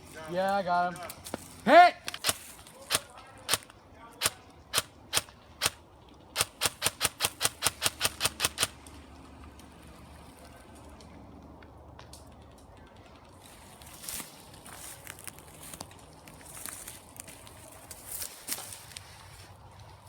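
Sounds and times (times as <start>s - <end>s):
airsoft gun shots: 2.0s - 5.8s, 6.4s - 8.8s.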